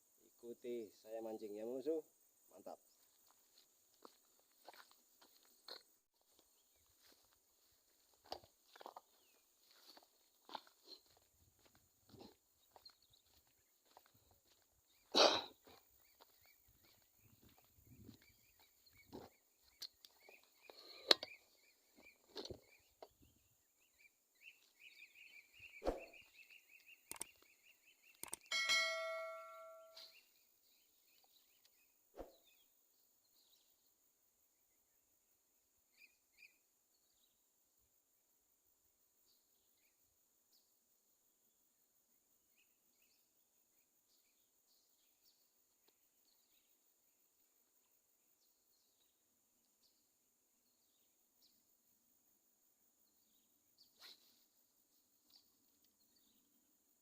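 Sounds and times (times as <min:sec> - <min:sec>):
faint high chirps: 0:08.8 - 0:30.4
sharp click: 0:27.1 - 0:27.4, 0:28.1 - 0:29.1
loud metallic ding: 0:28.5 - 0:30.1.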